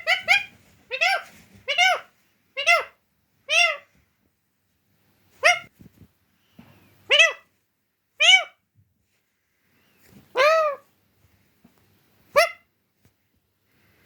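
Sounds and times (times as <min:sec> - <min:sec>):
parrot calling: 0:00.0 - 0:03.9, 0:05.4 - 0:05.7, 0:07.0 - 0:07.5, 0:08.2 - 0:08.6, 0:10.3 - 0:10.9, 0:12.3 - 0:12.7.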